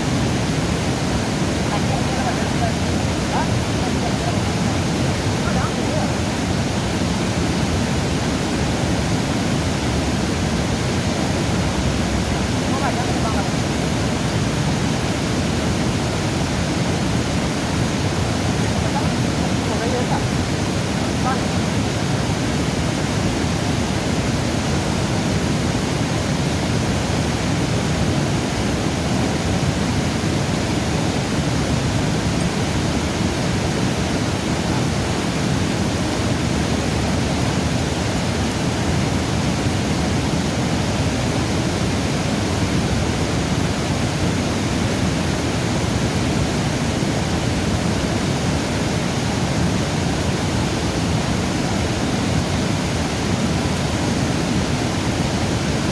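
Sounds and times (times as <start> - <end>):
river water rushing: 0.0 - 55.9.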